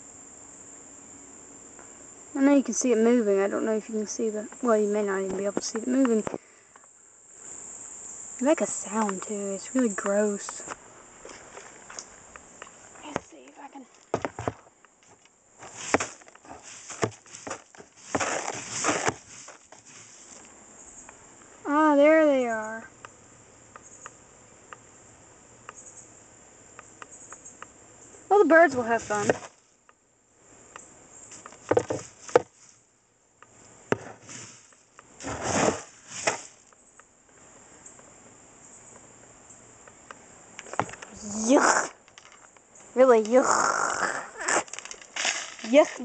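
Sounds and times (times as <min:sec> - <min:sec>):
bird seed rustling: 0:08.6 - 0:21.1, 0:28.4 - 0:29.8, 0:31.2 - 0:32.9, 0:33.6 - 0:36.8, 0:40.6 - 0:46.0.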